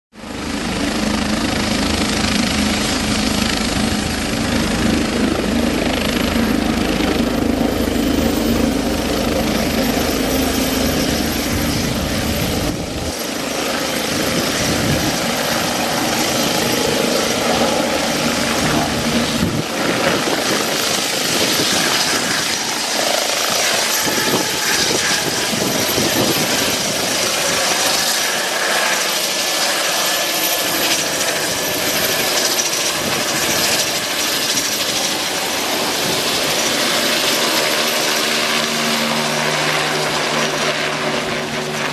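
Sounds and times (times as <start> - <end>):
helicopter rotor and turbine noise: 0.1 - 41.9.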